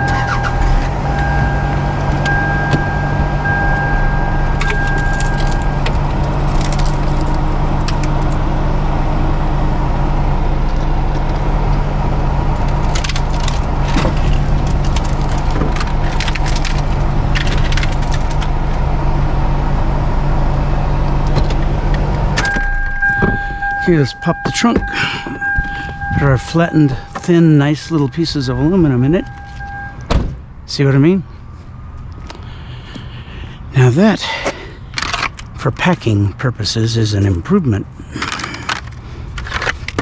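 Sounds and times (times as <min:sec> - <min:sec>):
electronic warning chime: 0:00.0 - 0:05.8, 0:22.4 - 0:30.0
scrap aluminum crunching under tires: 0:00.0 - 0:08.7, 0:11.2 - 0:19.8, 0:21.1 - 0:30.1, 0:33.7 - 0:40.0
car engine running: 0:00.0 - 0:40.0.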